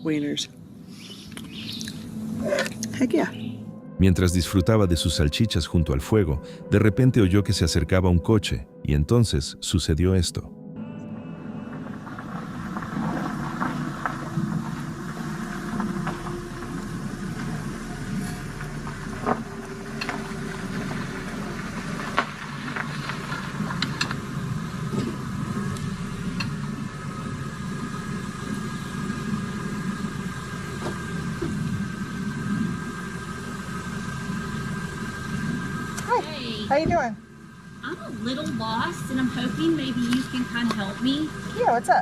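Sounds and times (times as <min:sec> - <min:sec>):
car engine running: 0:00.0 - 0:08.4, 0:10.8 - 0:42.0.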